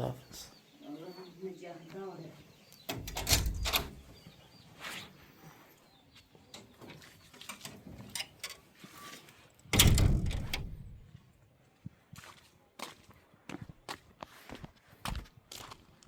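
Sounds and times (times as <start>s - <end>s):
door slamming: 2.9s - 4.0s, 9.7s - 11.0s
door clicking and rattling: 2.9s - 4.1s, 9.7s - 11.1s.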